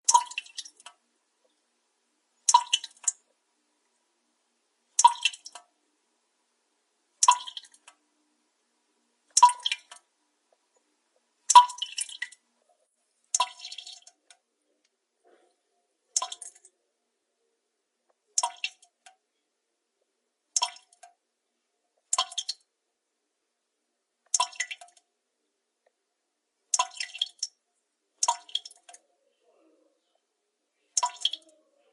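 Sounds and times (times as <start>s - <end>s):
water drops plinking: 0.0s - 1.0s, 2.5s - 3.2s, 7.2s - 7.8s, 9.4s - 10.0s, 11.5s - 12.4s, 28.2s - 29.0s, 31.0s - 31.5s.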